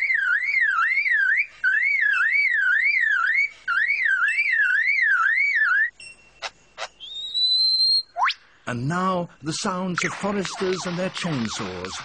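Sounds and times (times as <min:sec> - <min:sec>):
bird mimicking car alarm: 0:00.0 - 0:08.4.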